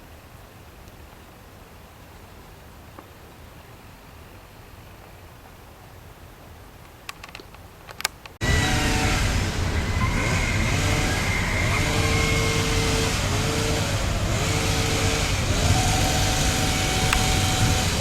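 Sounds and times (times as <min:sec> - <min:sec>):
motor vehicle engine running: 0:08.4 - 0:18.0.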